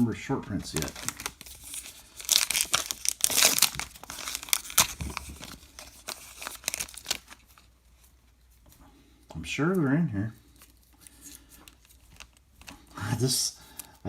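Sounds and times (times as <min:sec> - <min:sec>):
foil wrapper tearing and crinkling: 0:00.5 - 0:07.7, 0:10.5 - 0:14.0.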